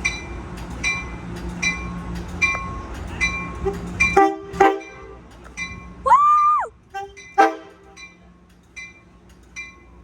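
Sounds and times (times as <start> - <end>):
locomotive bell ringing: 0.0 - 6.1, 6.9 - 10.0
train humming: 0.0 - 10.0
train horn blast: 3.6 - 5.3, 6.9 - 8.0.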